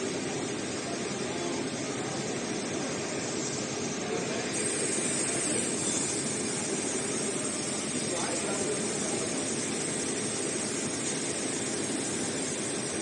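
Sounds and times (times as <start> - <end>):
thin high whine: 0.0 - 13.0
sewing machine running: 4.5 - 13.0.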